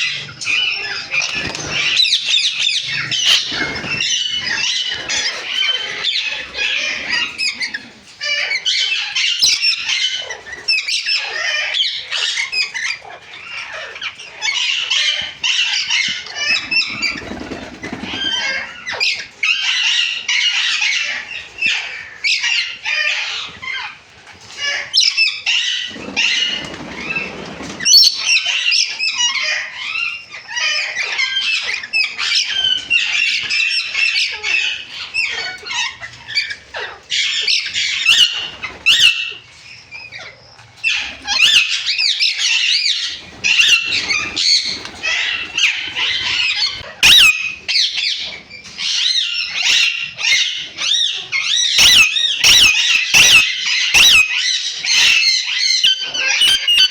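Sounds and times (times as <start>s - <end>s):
wings fluttering: 0.0s - 8.8s, 12.2s - 19.1s, 25.6s - 28.7s, 42.4s - 47.2s
parrots squawking: 0.0s - 56.9s.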